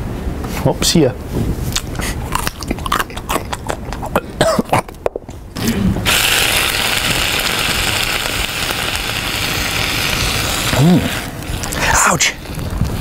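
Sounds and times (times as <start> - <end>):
electric motor whirring: 6.0 - 13.0.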